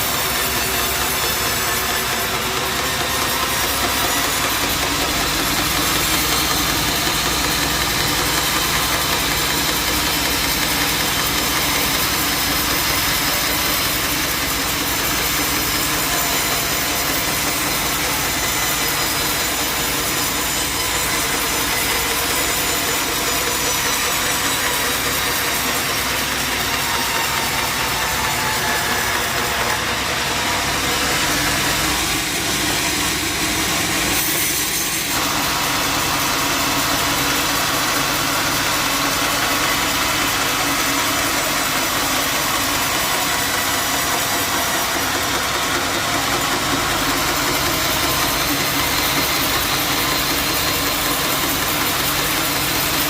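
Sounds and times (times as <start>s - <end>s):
band saw cutting wood: 0.0s - 53.0s
motor running: 0.0s - 53.0s.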